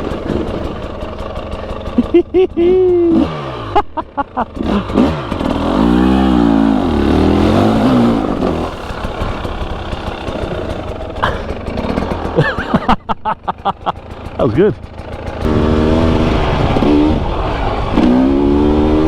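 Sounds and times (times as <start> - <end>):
dirt bike engine revving: 0.0 - 19.0
wind rush: 15.4 - 19.0.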